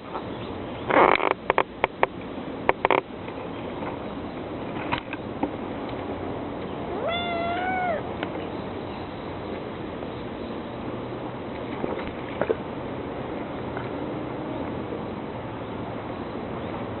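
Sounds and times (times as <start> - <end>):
rustle: 0.0 - 15.6
kitten meowing: 6.8 - 8.1.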